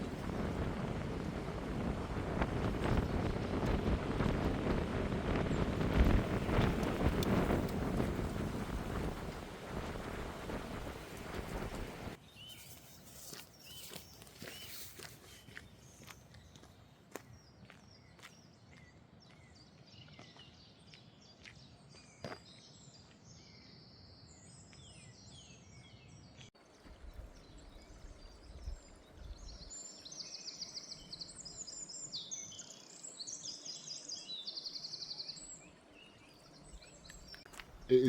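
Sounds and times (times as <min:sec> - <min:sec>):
songbirds singing: 0:11.0 - 0:38.0.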